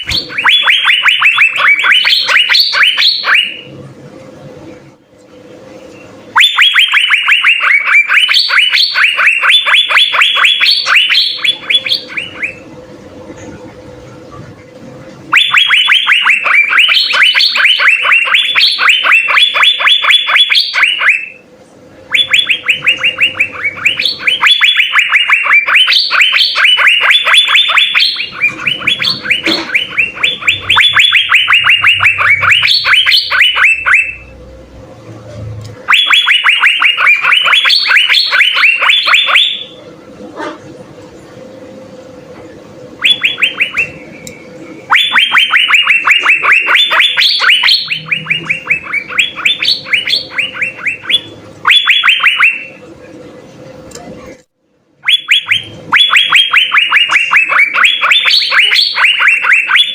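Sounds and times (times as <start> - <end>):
bird singing rapid notes: 0.0 - 3.7, 5.9 - 12.6, 15.3 - 21.4, 22.1 - 34.3, 35.9 - 39.8, 43.0 - 52.7.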